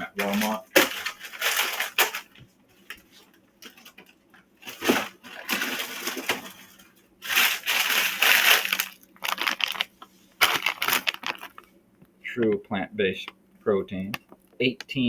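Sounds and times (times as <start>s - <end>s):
plastic packaging crinkling: 0.0s - 4.0s, 4.6s - 11.8s.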